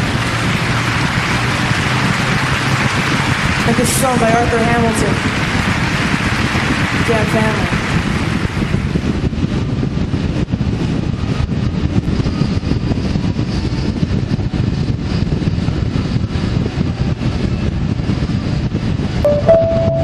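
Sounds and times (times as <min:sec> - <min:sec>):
road noise: 0:00.0 - 0:08.9
wind: 0:05.0 - 0:20.0.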